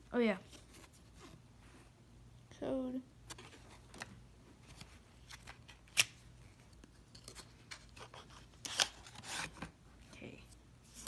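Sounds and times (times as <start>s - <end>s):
paper packaging rustling: 7.1s - 9.7s.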